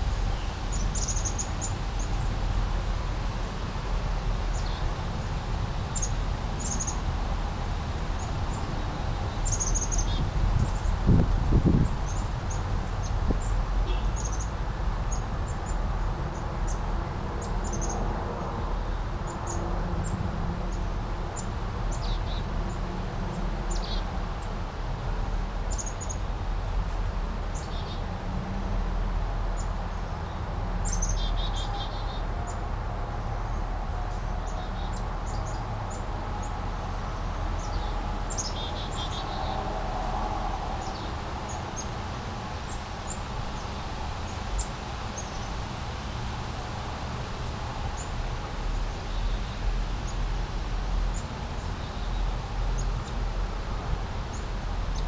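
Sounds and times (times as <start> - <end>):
small birds chirping: 0.3 - 2.3, 8.2 - 14.5.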